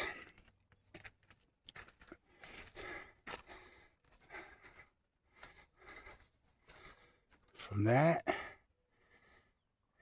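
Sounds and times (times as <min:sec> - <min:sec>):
man breathing hard: 0:02.3 - 0:07.5, 0:08.3 - 0:10.0.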